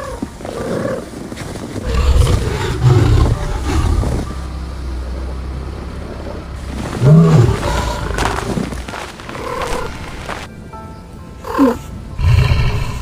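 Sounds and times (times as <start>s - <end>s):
big cat call rising and falling: 1.8s - 4.3s, 5.2s - 8.5s
big cat growling low: 1.8s - 4.4s, 5.0s - 8.8s, 11.4s - 13.0s.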